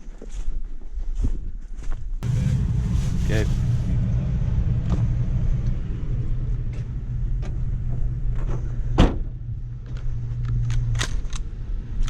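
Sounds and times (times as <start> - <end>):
engine idling: 2.2 - 10.5.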